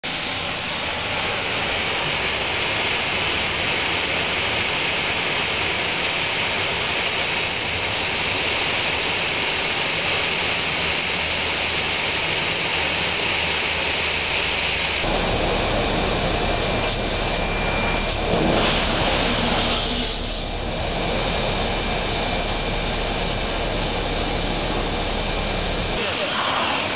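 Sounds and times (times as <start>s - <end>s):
vacuum cleaner hissing air: 14.2s - 26.9s
low hum: 15.0s - 26.0s.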